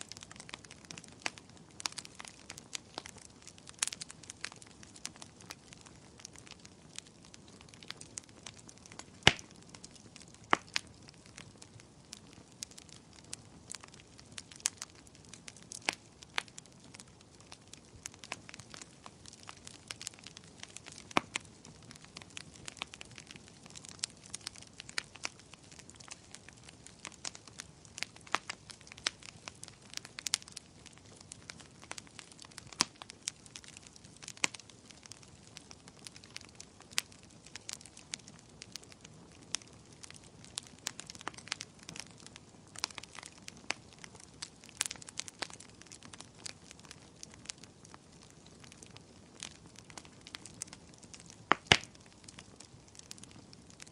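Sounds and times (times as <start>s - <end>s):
sharp snaps of fire: 0.0s - 53.9s
wood fire crackling and popping: 0.0s - 53.9s.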